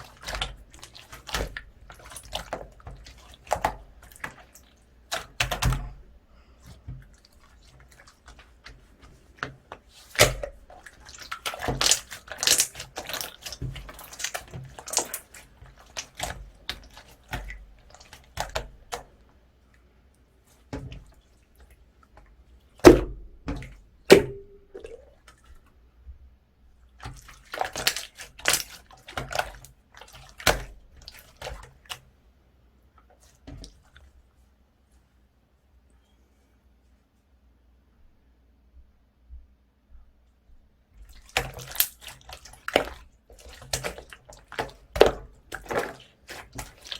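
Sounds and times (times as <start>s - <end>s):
slime squishing and popping: 10.0s - 15.3s.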